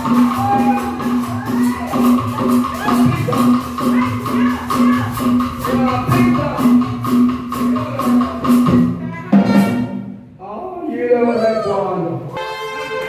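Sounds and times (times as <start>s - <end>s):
dance music with steady beat: 0.0s - 9.1s.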